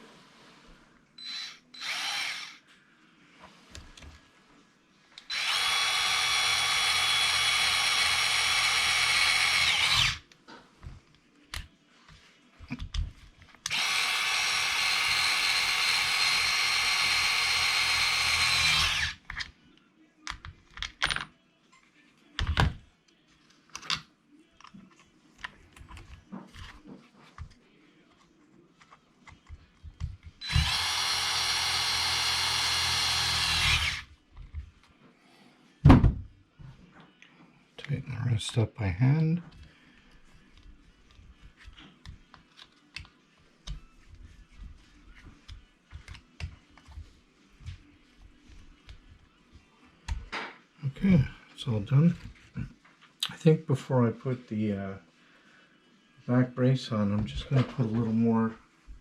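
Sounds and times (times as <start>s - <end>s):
electric drill driving screws: 1.2s - 2.6s, 5.3s - 10.2s, 13.7s - 19.2s, 30.4s - 34.1s
parts clicking and knocking: 20.3s - 21.3s.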